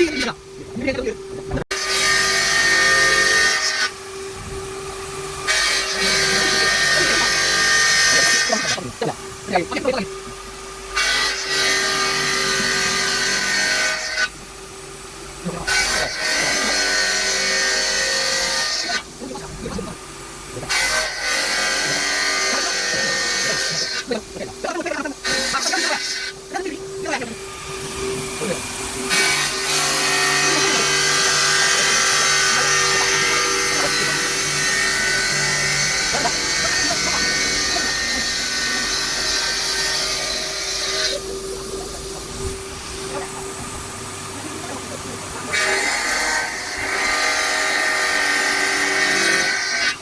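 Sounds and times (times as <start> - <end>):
saw blade cutting stone: 0.0 - 0.4, 1.7 - 10.2, 10.8 - 14.4, 15.4 - 50.0
machine hum: 0.0 - 50.0.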